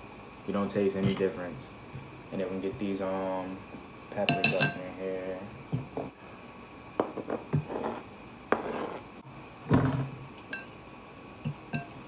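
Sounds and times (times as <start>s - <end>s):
utensils clinking against bowl: 4.2s - 4.9s, 10.5s - 10.8s, 11.4s - 12.0s.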